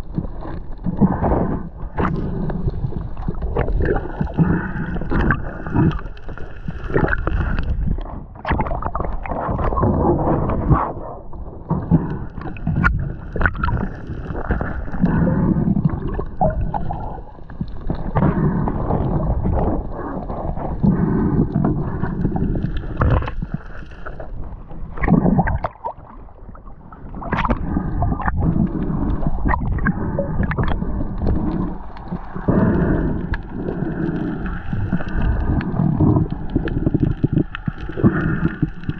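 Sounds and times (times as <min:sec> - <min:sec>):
water sloshing and gurgling: 0:00.0 - 0:38.9.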